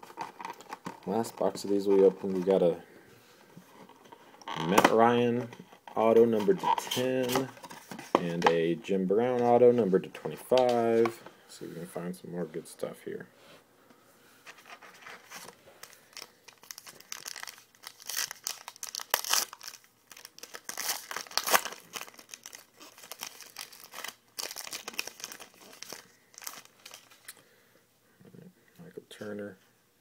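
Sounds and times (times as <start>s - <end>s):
card pack wrapper crinkling: 14.9s - 27.4s.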